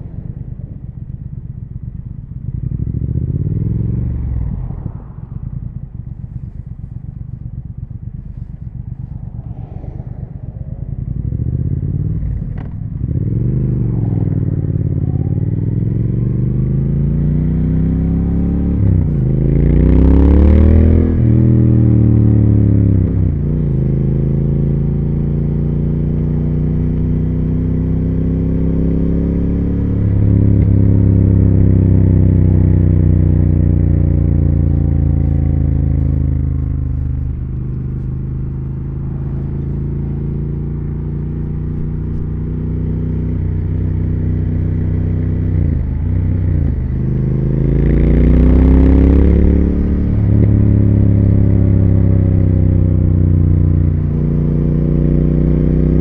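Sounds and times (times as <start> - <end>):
motorcycle engine and exhaust: 0.0 - 56.0
rush of noise: 3.3 - 21.4.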